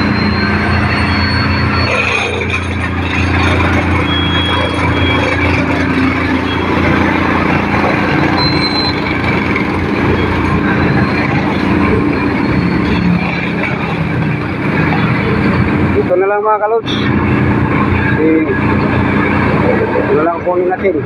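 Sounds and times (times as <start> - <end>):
faint high squeals: 0.0 - 14.1
vehicle engine rumbling: 0.0 - 21.0.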